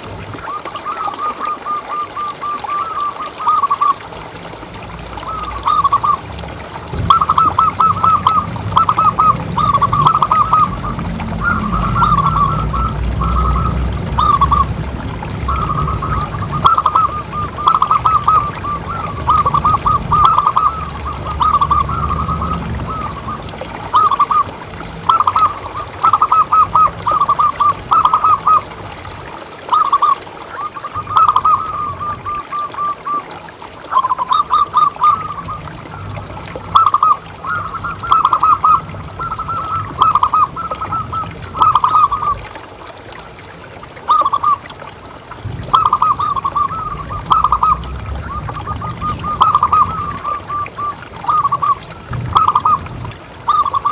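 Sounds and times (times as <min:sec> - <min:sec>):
low rumble: 0:04.5 - 0:29.2, 0:45.4 - 0:53.4
dove cooing: 0:05.1 - 0:06.3, 0:06.9 - 0:29.0, 0:29.7 - 0:33.3, 0:33.9 - 0:42.5, 0:45.6 - 0:53.9.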